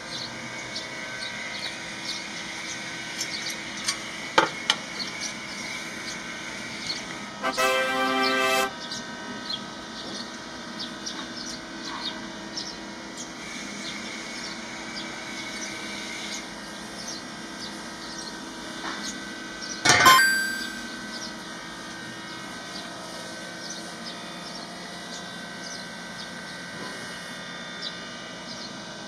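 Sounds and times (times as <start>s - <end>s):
sharp ringing knock: 19.9s - 20.9s.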